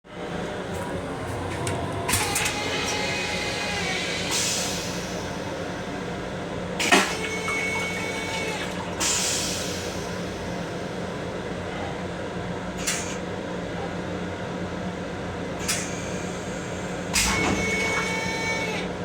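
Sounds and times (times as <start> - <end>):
toilet flushing: 0.2 - 11.2, 15.6 - 18.9.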